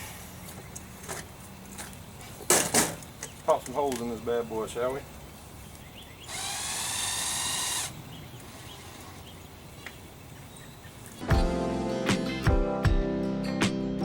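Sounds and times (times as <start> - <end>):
power drill whining: 6.3 - 9.3
acoustic guitar music: 11.2 - 14.0.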